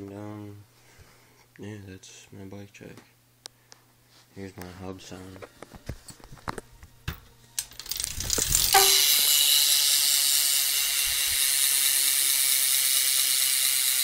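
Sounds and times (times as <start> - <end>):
bike hub freewheeling ratchet: 7.8 - 14.0.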